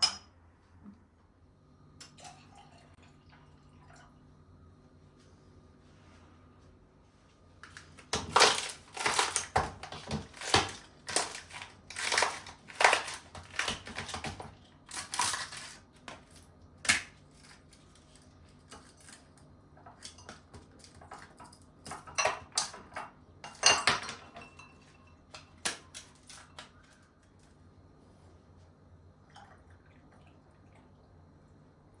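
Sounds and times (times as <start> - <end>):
utensils scraping and crunching: 7.6 - 16.3, 16.9 - 22.6.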